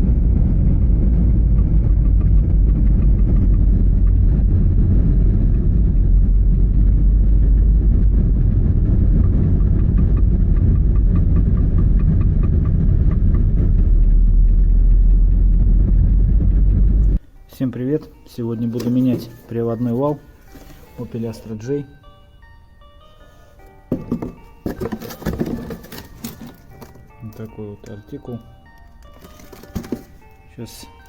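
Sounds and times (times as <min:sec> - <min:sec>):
road noise rumble: 0:00.0 - 0:17.3.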